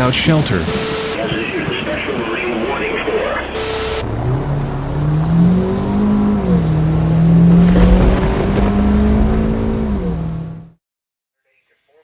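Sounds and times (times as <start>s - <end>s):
motor vehicle engine running: 0.7s - 10.8s.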